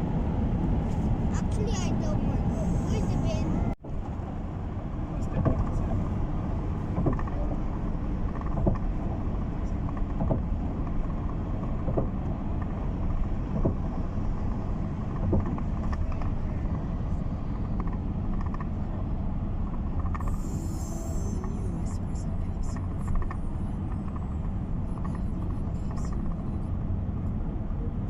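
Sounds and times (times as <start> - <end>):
vehicle rumbling in motion: 0.0 - 28.0.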